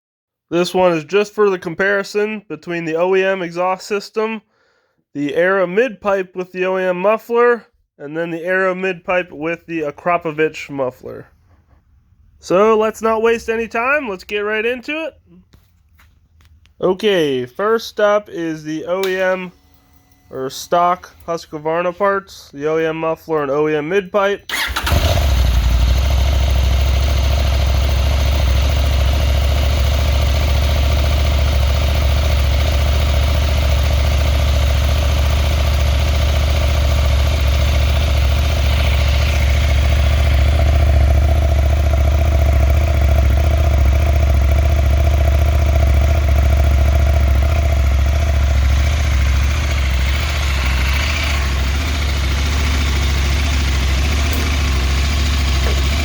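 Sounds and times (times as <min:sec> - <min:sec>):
motorcycle engine idling: 0:24.5 - 0:56.0.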